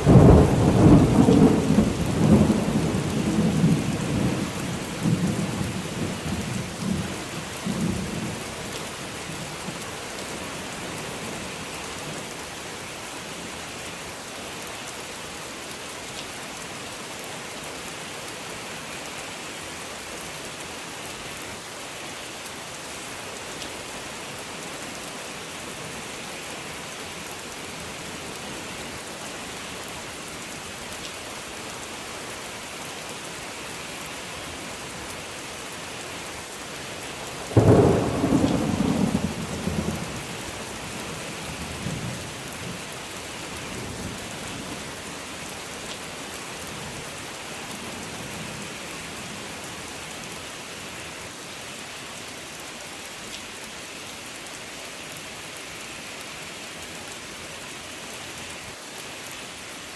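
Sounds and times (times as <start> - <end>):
steady rain falling: 0.0 - 59.9
thunderclap rumbling: 37.6 - 40.1.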